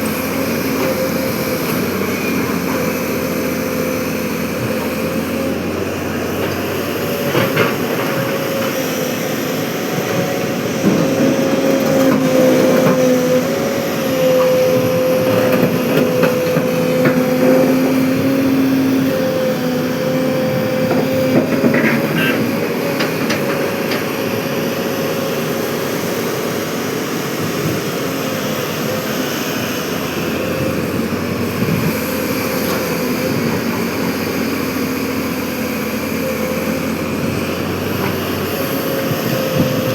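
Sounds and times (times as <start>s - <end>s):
excavator diesel engine droning: 0.0s - 39.9s.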